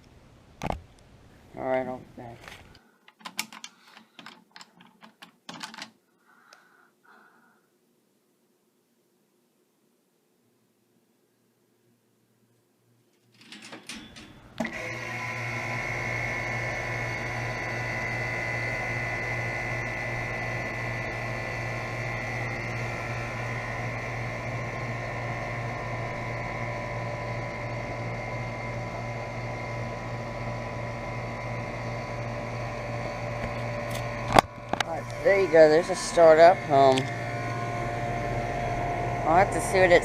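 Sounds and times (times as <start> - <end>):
air conditioner humming and whining: 11.8 - 40.0
air conditioner clicks: 13.4 - 14.8.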